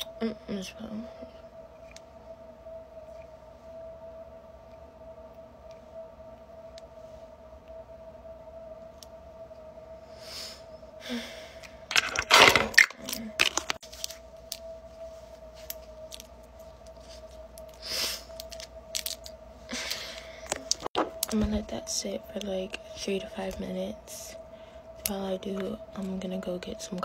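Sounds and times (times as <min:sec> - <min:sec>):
faint hum: 0:00.0 - 0:27.0
rustling handling noises: 0:11.9 - 0:17.8.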